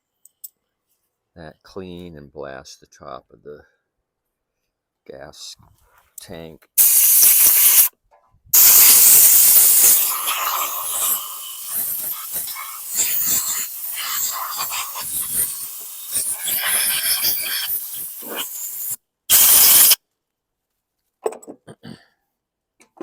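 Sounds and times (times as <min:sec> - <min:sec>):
compressed air blow gun hissing: 0:06.8 - 0:07.9, 0:08.6 - 0:20.0.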